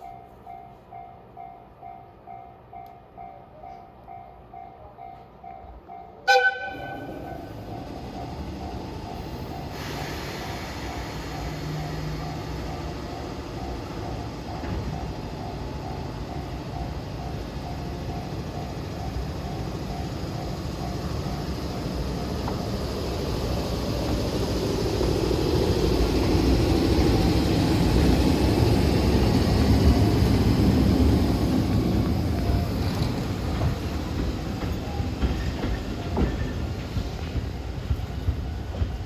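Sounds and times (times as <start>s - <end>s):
train running noise: 0.0s - 39.0s
wheel clacks over rail joints: 31.9s - 39.0s.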